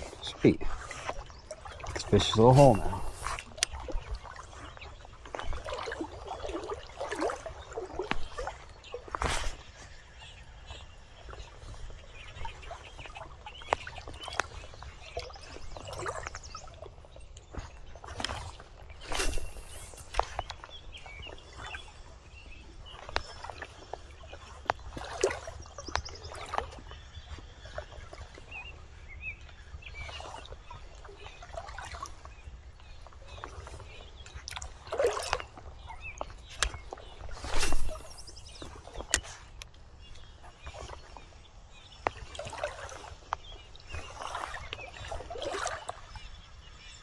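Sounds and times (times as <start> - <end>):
river water splashing and trickling: 0.0 - 28.5, 30.0 - 47.0
birds calling: 2.0 - 3.5.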